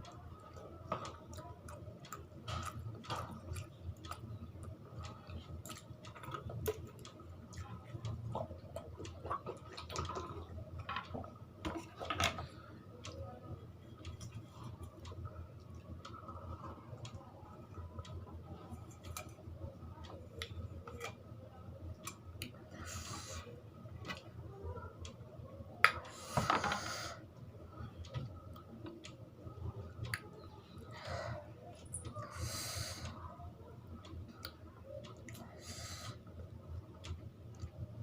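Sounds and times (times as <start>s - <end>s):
person chewing: 1.3s - 4.2s.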